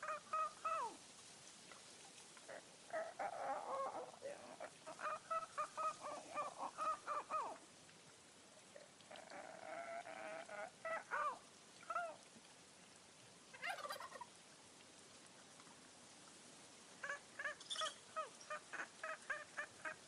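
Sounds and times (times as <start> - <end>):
turkeys calling: 0.0 - 0.9, 4.6 - 7.6, 13.6 - 14.3, 17.0 - 20.0
gentle rain hiss: 0.0 - 20.0.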